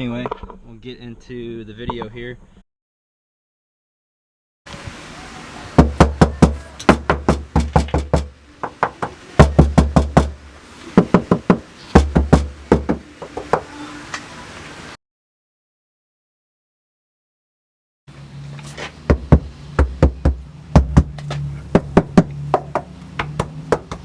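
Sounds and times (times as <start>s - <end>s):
knuckles knocking on car panel: 5.8s - 10.4s, 11.0s - 13.6s, 19.1s - 21.2s, 21.8s - 24.0s.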